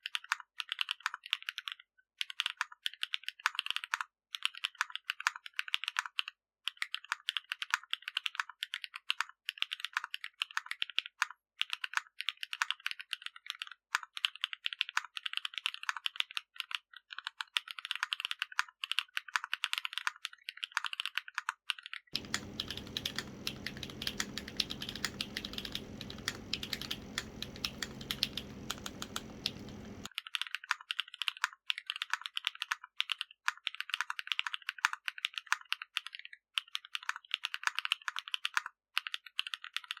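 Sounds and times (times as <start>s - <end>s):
fast typing on mechanical keyboard: 0.0s - 40.0s
steady low hum: 22.2s - 30.1s.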